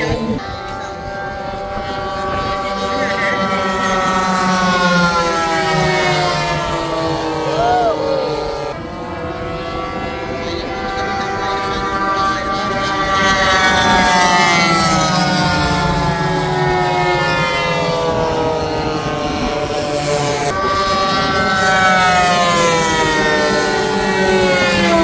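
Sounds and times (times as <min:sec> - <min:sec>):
model airplane engine whining: 0:00.0 - 0:25.0.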